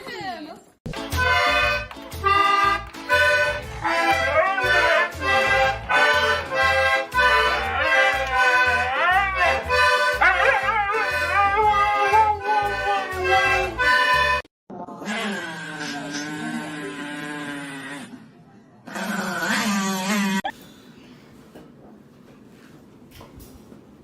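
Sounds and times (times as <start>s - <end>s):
accordion music: 0.9s - 14.5s
dog howling: 4.1s - 5.2s, 7.9s - 13.8s.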